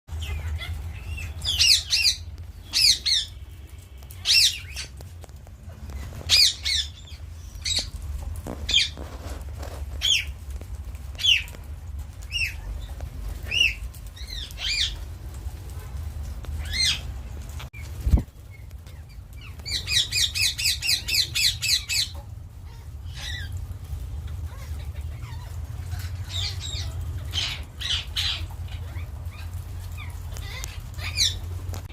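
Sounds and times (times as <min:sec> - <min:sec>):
parrot squawking: 0:00.1 - 0:03.5, 0:04.1 - 0:05.0, 0:05.8 - 0:08.0, 0:19.4 - 0:23.6, 0:24.3 - 0:31.4.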